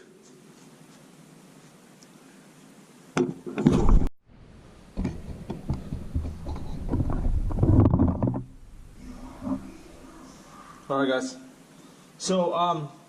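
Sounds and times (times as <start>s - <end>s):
knocks and clattering: 5.0s - 10.2s.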